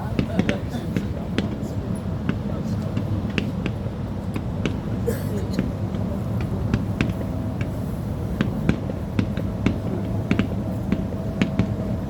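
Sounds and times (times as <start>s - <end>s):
fireworks bangs and cracks: 0.0s - 5.0s, 5.6s - 12.0s
low background rumble: 0.0s - 12.0s.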